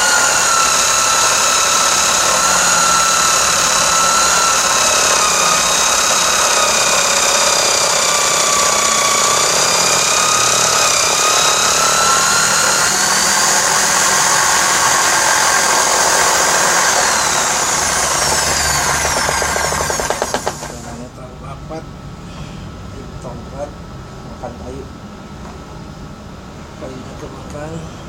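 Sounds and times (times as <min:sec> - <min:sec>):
sander rasping on wood: 0:00.0 - 0:20.9
electric drill whining: 0:00.0 - 0:21.0.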